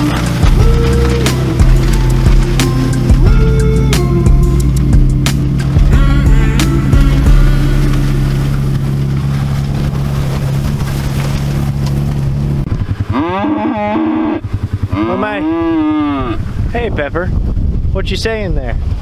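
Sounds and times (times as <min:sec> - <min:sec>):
vehicle engine running: 0:00.0 - 0:17.9
cow mooing: 0:05.6 - 0:09.0, 0:13.0 - 0:16.5.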